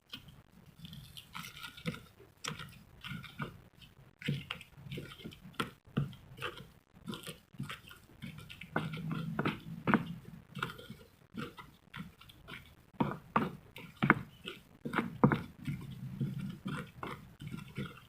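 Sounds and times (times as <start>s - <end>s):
person chewing food: 0.0s - 18.0s.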